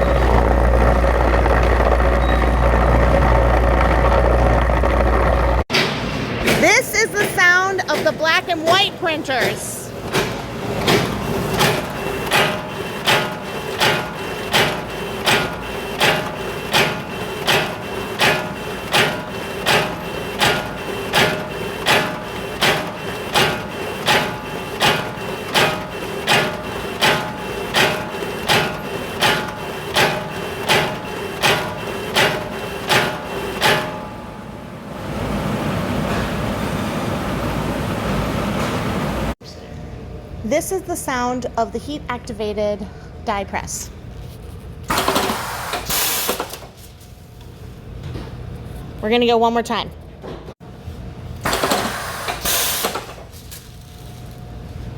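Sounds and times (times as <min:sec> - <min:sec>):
rumbling machine noise: 0:00.0 - 0:18.0
printer machine hum: 0:00.0 - 0:39.4
printer clacking: 0:07.2 - 0:34.0.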